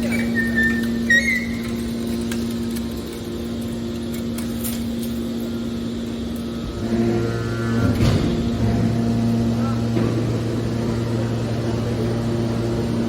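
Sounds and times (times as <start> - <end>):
short high squeak: 0.0 - 1.7
hydraulic motor and pump hum: 0.0 - 13.0.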